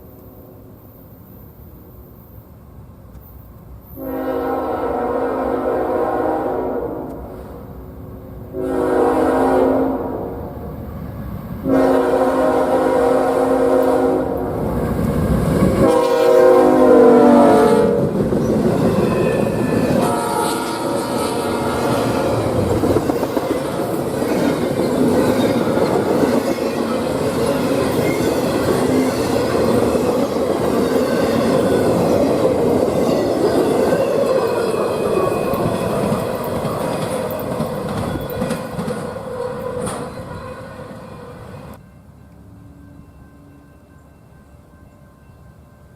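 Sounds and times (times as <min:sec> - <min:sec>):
locomotive air horn blasts: 0:04.0 - 0:07.2, 0:08.5 - 0:10.4, 0:11.6 - 0:14.6, 0:15.8 - 0:18.2, 0:19.4 - 0:23.2
train wheels clattering over rail joints: 0:22.0 - 0:40.4.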